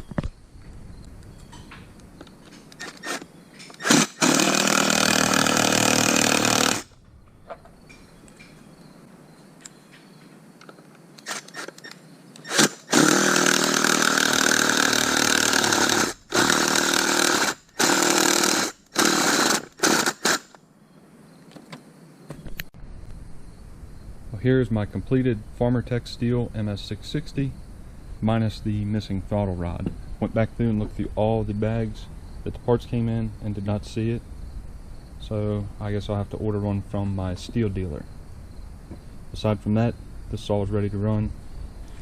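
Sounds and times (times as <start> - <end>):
power driver running screws: 2.8 - 6.9, 11.2 - 20.6.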